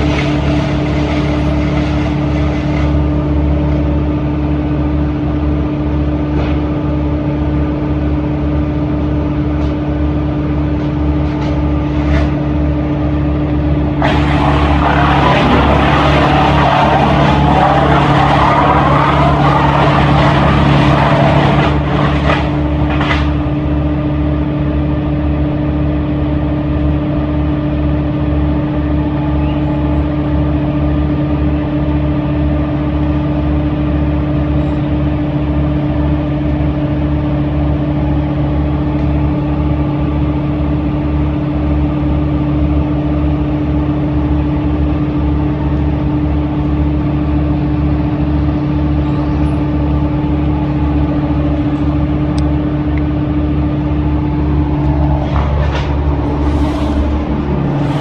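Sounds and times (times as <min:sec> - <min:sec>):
rough grinding with sharp cracks: 0:00.0 - 0:03.9, 0:10.8 - 0:12.6, 0:13.5 - 0:24.1, 0:51.1 - 0:58.0
large machinery engine humming: 0:00.0 - 0:58.0.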